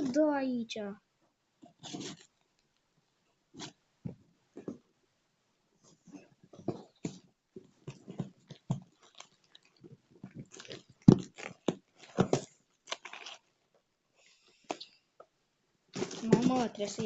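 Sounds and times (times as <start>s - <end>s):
packaging crackling and rustling: 1.7s - 2.6s, 6.2s - 13.7s, 15.9s - 17.0s.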